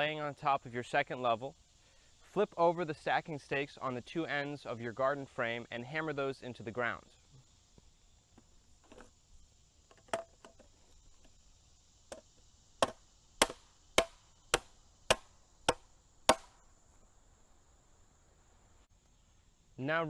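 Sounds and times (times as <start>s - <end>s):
hammer striking stake: 12.8s - 16.5s.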